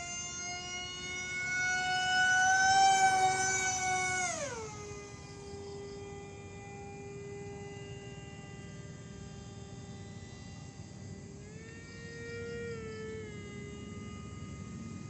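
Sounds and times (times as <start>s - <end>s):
aircraft motor whining: 0.0s - 15.0s.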